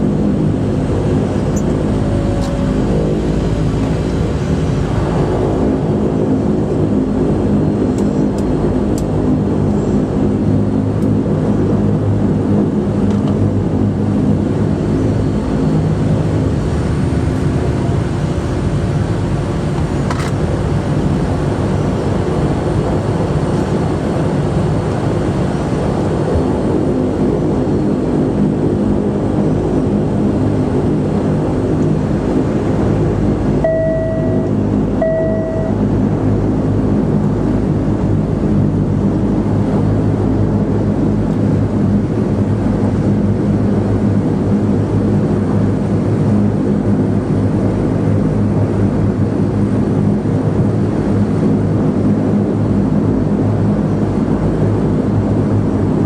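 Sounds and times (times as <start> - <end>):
turboprop engines droning: 0.0 - 56.0
short beeps: 33.6 - 35.8.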